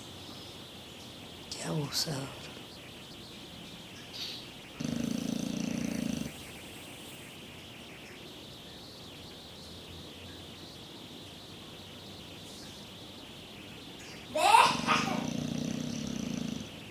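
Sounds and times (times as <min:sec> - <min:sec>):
dog breathing: 0:04.8 - 0:06.5, 0:15.2 - 0:16.8
dog snoring: 0:04.8 - 0:06.5, 0:14.9 - 0:16.9.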